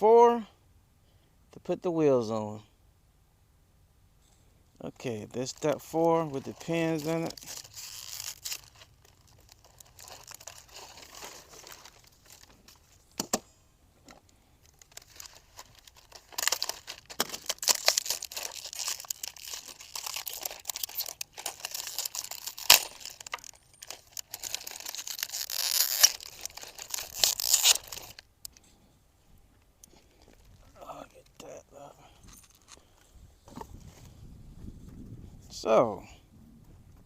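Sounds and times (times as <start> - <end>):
packaging rustling and tearing: 5.4 - 13.0, 14.6 - 28.3, 32.3 - 32.8.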